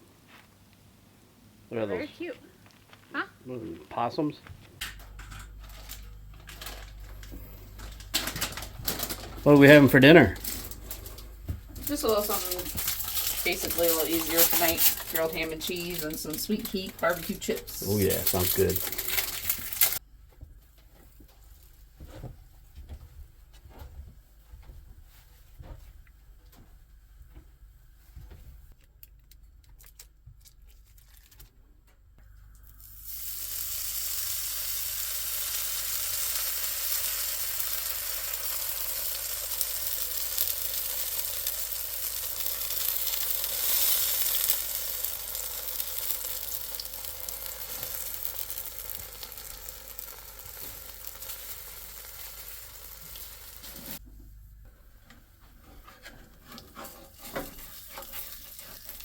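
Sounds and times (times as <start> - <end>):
sandwich sizzling in a pan: 8.6 - 20.0, 32.7 - 54.0, 56.5 - 59.0.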